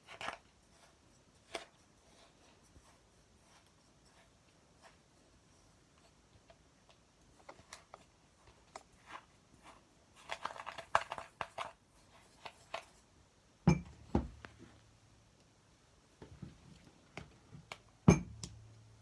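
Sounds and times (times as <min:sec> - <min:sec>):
dull thumps: 0:13.7 - 0:14.7.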